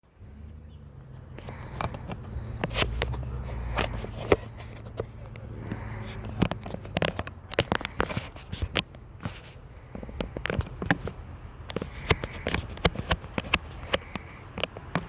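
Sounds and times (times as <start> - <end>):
small engine idling: 0.0 - 15.0
sharp clicks and knocks: 1.4 - 15.0.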